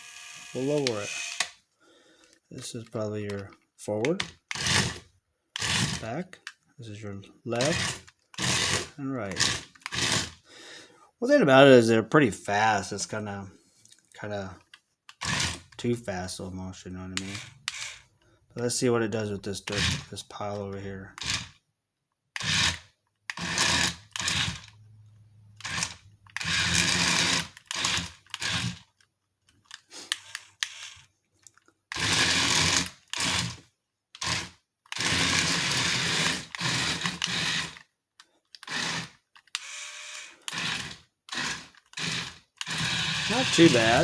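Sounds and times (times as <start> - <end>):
toy electric motors whirring: 0.0 - 1.6, 7.6 - 10.4, 17.2 - 18.1, 21.2 - 21.6, 22.4 - 24.8, 25.6 - 28.9, 29.7 - 31.1, 31.9 - 33.6, 34.2 - 37.9, 38.5 - 44.0.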